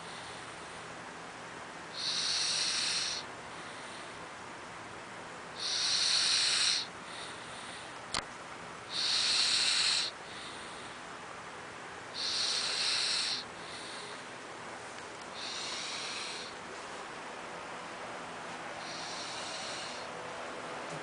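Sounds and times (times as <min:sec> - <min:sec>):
loud hissing snoring: 0:00.0 - 0:00.6, 0:01.9 - 0:04.2, 0:05.5 - 0:07.9, 0:08.9 - 0:11.0, 0:12.1 - 0:14.2, 0:15.3 - 0:16.6, 0:18.8 - 0:20.2.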